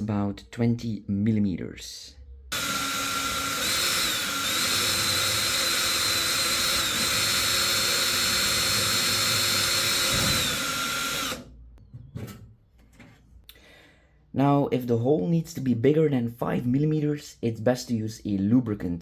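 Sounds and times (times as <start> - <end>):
electric drill boring plastic: 2.5 - 11.5.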